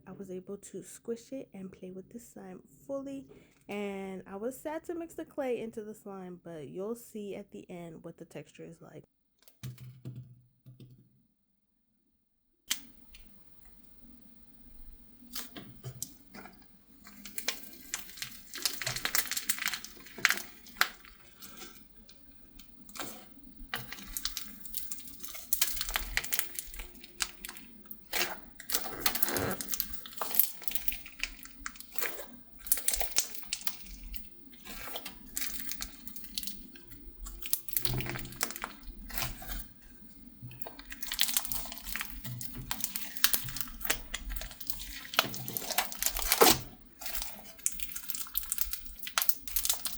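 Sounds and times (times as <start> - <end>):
slime squishing with sticky crackles: 15.2 - 49.9.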